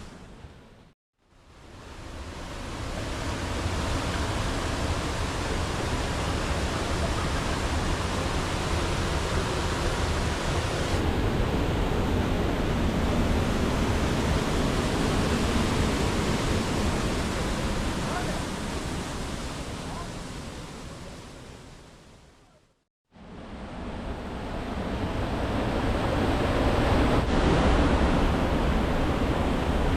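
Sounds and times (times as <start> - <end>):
waterfall rushing: 2.2 - 21.7.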